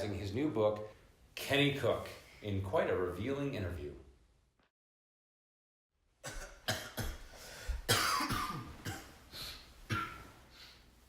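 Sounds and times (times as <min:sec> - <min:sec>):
person coughing harshly: 0:06.2 - 0:07.3, 0:07.9 - 0:09.2, 0:09.9 - 0:10.3.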